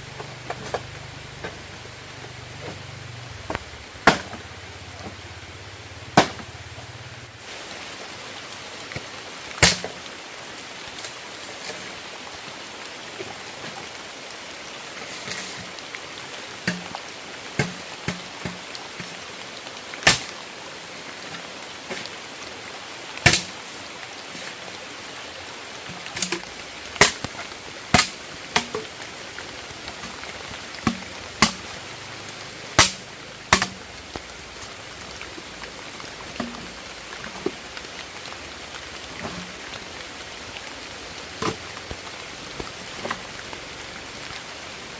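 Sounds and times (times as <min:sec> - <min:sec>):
steady hiss: 0:00.0 - 0:44.9
firewood cracking: 0:09.6 - 0:10.0, 0:26.0 - 0:31.8, 0:32.7 - 0:39.9.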